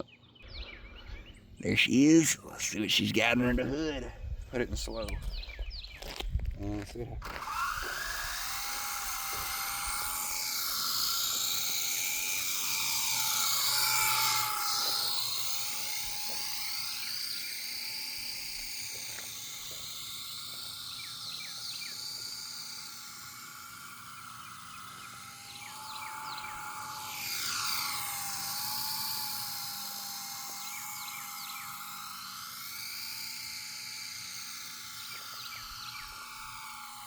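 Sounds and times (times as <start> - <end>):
rc helicopter rotor whine: 0.0 - 37.0.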